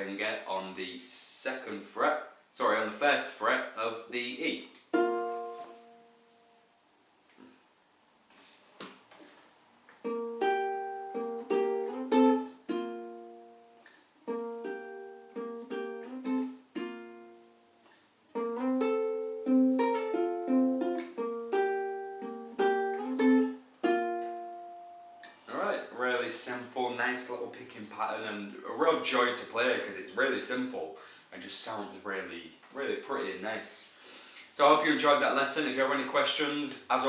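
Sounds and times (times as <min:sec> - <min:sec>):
ukulele fingerpicked: 0:04.7 - 0:06.6, 0:10.0 - 0:25.4.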